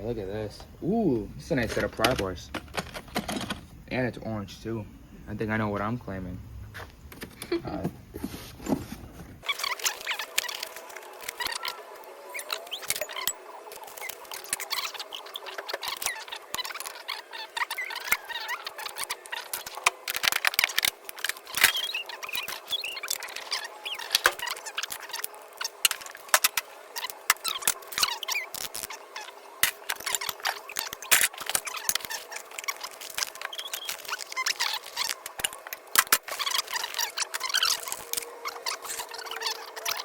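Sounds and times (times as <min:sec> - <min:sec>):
short high squeaks: 0:09.4 - 0:40.0.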